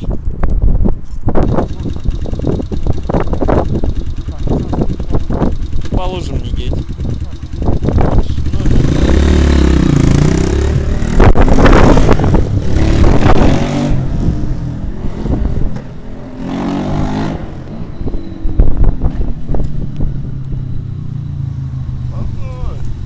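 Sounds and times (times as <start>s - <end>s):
motorbike engine revving: 1.4s - 19.1s.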